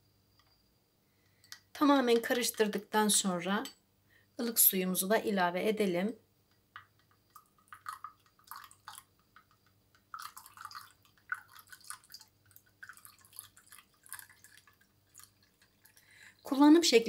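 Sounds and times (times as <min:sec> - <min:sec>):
water splashing in a glass: 0:06.8 - 0:16.7.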